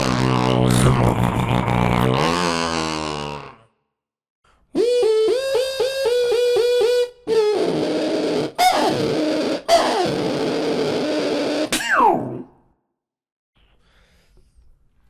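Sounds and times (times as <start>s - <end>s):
beatbox warbling tone: 0.0s - 3.6s, 4.8s - 12.5s
beatbox buzzing tone with clicks: 4.7s - 11.8s.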